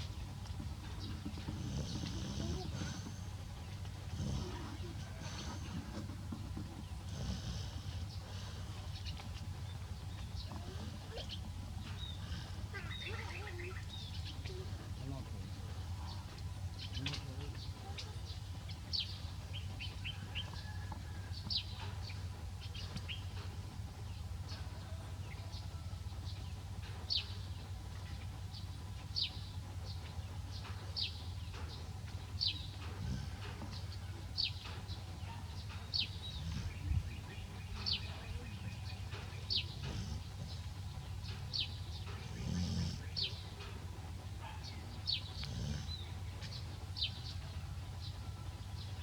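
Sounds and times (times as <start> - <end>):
bird chirping: 25.4 - 49.0.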